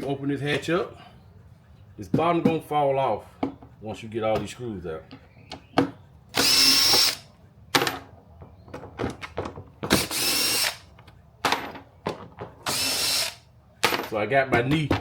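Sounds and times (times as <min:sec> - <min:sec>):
cordless drill whirring: 0:06.4 - 0:07.2, 0:10.0 - 0:10.8, 0:12.7 - 0:13.4.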